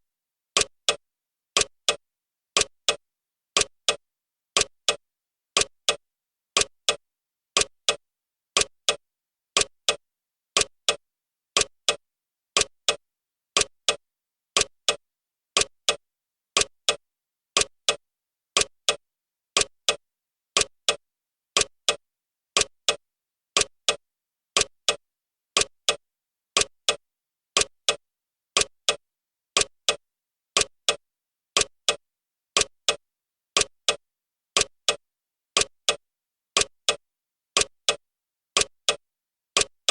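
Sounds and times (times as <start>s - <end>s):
clock ticking: 0.6s - 1.0s, 1.6s - 2.0s, 2.6s - 3.0s, 3.6s - 4.0s, 4.6s - 5.0s, 5.6s - 6.0s, 6.6s - 7.0s, 7.6s - 8.0s, 8.6s - 9.0s, 9.6s - 10.0s, 10.6s - 11.0s, 11.6s - 12.0s, 12.6s - 13.0s, 13.6s - 14.0s, 14.6s - 15.0s, 15.6s - 16.0s, 16.6s - 17.0s, 17.6s - 18.0s, 18.6s - 19.0s, 19.6s - 20.0s, 20.6s - 21.0s, 21.6s - 22.0s, 22.6s - 23.0s, 23.6s - 24.0s, 24.6s - 25.0s, 25.6s - 26.0s, 26.6s - 27.0s, 27.6s - 28.0s, 28.6s - 29.0s, 29.6s - 30.0s, 30.6s - 31.0s, 31.6s - 32.0s, 32.6s - 33.0s, 33.6s - 34.0s, 34.6s - 35.0s, 35.6s - 36.0s, 36.6s - 37.0s, 37.6s - 38.0s, 38.6s - 39.0s, 39.6s - 39.9s.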